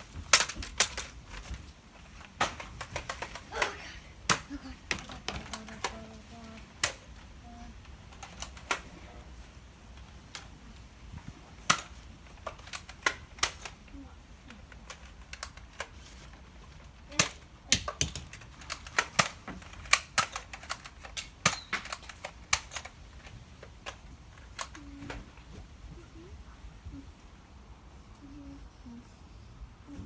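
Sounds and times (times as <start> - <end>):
toy blaster clicking and firing: 0.2 - 1.6, 2.4 - 8.9, 11.6 - 16.0, 16.8 - 24.9
foam darts striking plastic: 2.4 - 5.0, 17.1 - 22.8.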